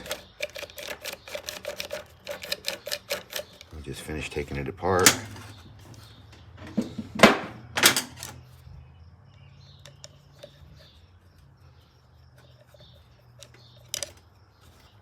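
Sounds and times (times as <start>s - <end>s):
small metal parts clicking: 0.0s - 4.1s, 7.8s - 8.5s, 12.4s - 14.9s.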